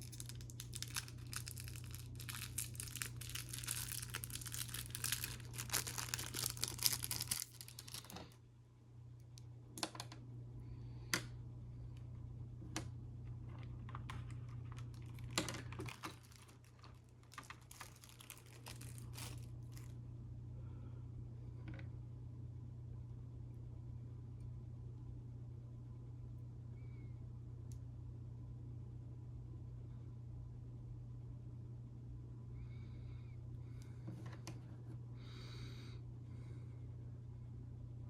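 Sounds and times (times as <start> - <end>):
packaging crinkling and rustling: 0.0 - 8.4, 13.5 - 20.0.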